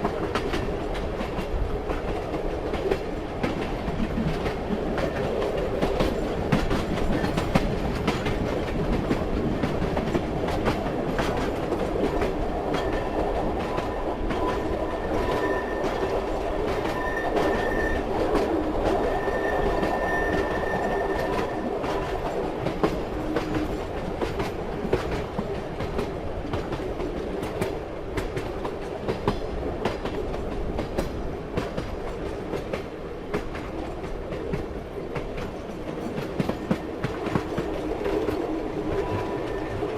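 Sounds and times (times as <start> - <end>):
wheels clicking over rail joints: 0.0 - 19.1
railway carriage rumbling: 0.0 - 39.9.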